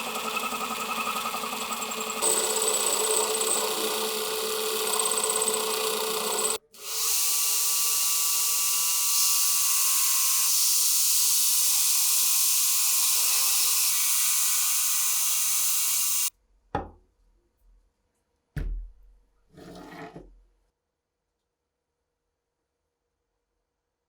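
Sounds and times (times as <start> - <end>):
power tool running on metal: 0.0 - 16.3.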